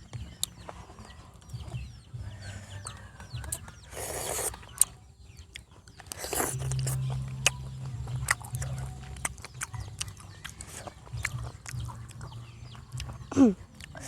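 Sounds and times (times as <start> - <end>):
steady low hum: 6.5 - 13.7.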